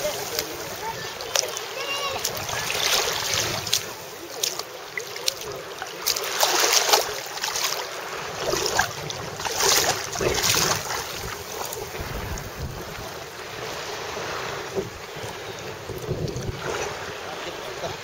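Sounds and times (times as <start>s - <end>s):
sea water splashing: 0.0s - 18.0s
wind gusting on microphone: 8.0s - 18.0s.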